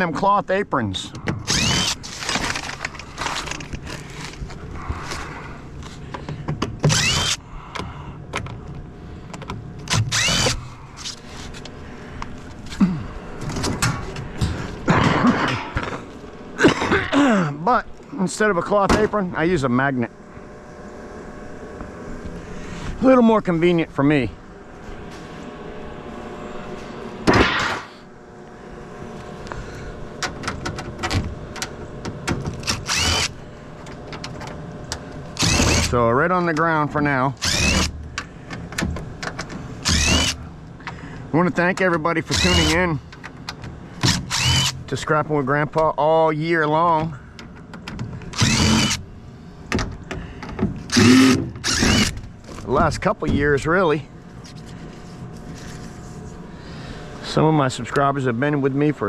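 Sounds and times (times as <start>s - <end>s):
steady hum: 0.0s - 59.0s
cordless drill whining: 1.4s - 2.8s, 6.8s - 7.4s, 9.9s - 11.2s, 32.6s - 33.4s, 35.4s - 36.0s, 37.4s - 38.0s, 39.8s - 40.4s, 42.3s - 42.9s, 44.1s - 44.8s, 48.3s - 49.0s, 50.9s - 52.2s.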